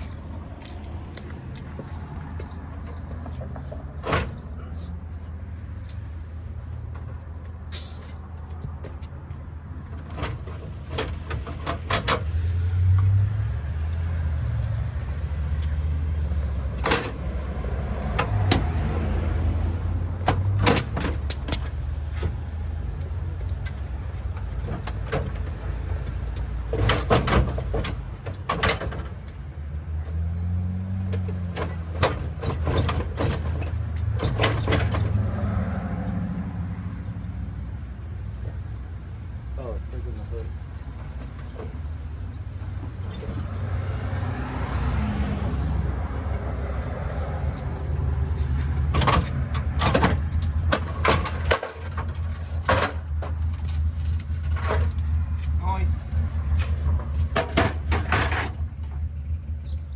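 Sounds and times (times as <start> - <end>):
knocks and clunks on a bumper: 0.0 - 6.0, 6.7 - 36.1, 40.1 - 46.5, 47.5 - 55.6, 56.3 - 59.2.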